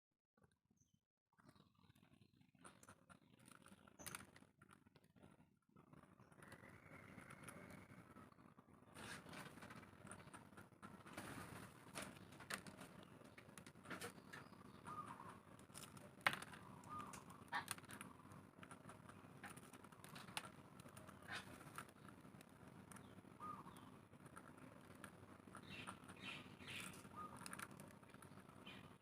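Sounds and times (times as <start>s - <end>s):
soft bird chirps: 0.8s - 4.5s, 5.9s - 29.0s
beak clicking and tapping: 12.0s - 23.9s, 24.7s - 29.0s.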